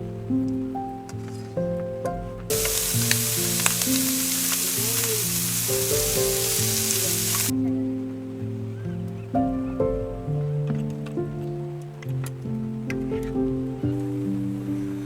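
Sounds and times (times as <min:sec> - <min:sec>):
background music: 0:00.0 - 0:15.0
food sizzling in a frying pan: 0:02.5 - 0:07.5.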